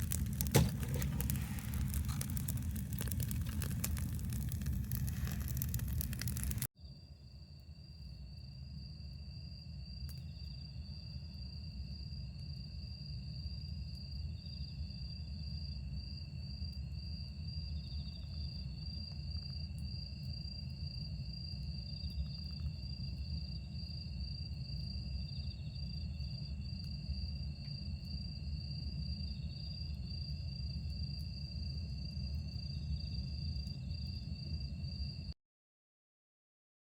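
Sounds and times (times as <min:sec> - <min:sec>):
low rumble: 0:00.0 - 0:06.7
crickets trilling: 0:00.0 - 0:35.3
soft insect chirp: 0:00.0 - 0:35.4
steady insect tone: 0:06.8 - 0:35.4.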